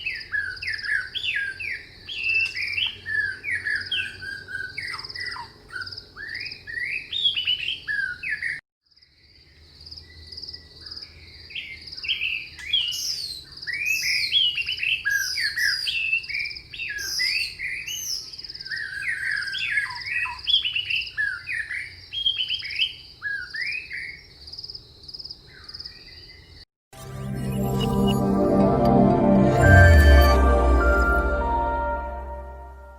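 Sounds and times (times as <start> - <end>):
birds chirping and whistling: 0.0 - 8.6, 12.1 - 24.2
high fast-pulsing trill: 27.0 - 32.9.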